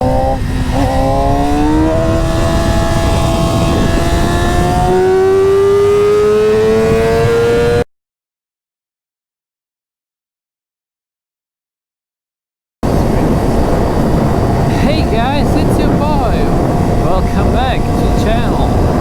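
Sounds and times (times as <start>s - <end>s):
motorcycle engine at high revs: 0.0s - 7.8s, 12.8s - 19.0s.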